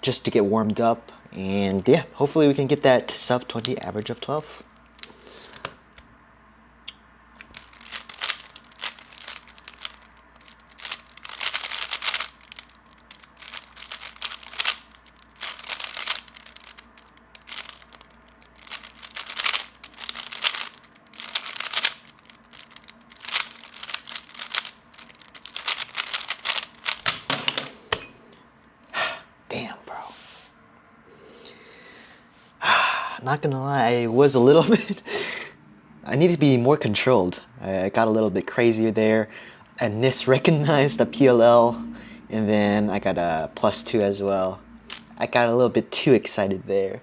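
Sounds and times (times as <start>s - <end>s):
speed cube plastic clicking: 4.8s - 5.8s, 6.9s - 27.4s.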